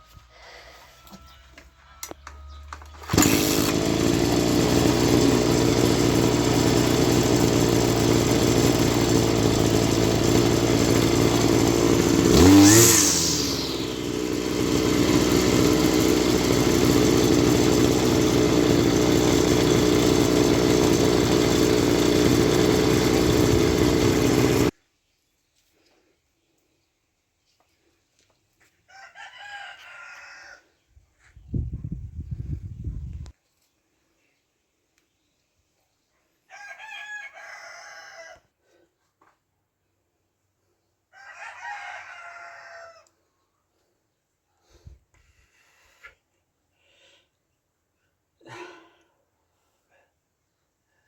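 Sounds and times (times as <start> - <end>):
brush cutter engine running: 2.0 - 24.7.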